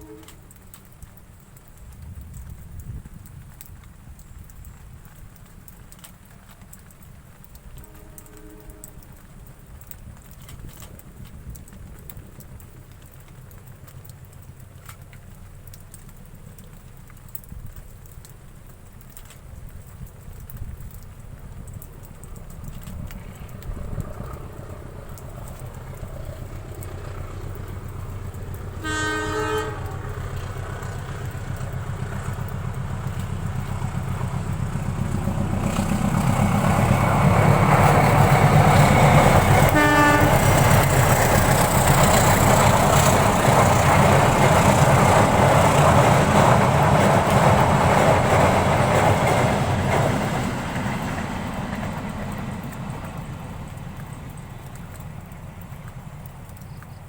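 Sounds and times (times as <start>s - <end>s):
train horn: 0.0s - 0.6s, 7.7s - 9.3s, 28.7s - 30.7s, 38.5s - 41.2s
train running noise: 0.0s - 57.0s.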